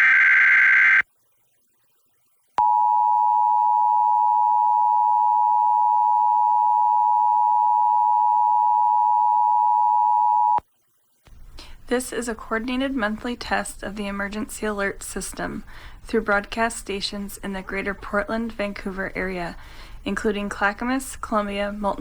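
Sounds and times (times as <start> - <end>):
data burst screech: 0.0 - 1.0.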